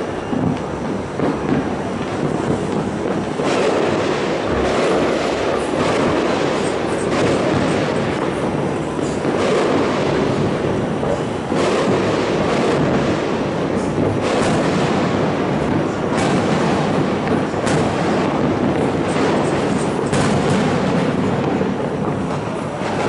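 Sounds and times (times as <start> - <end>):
fireworks bangs and crackles: 0.0 - 23.0
loud firework bursts: 0.0 - 23.0.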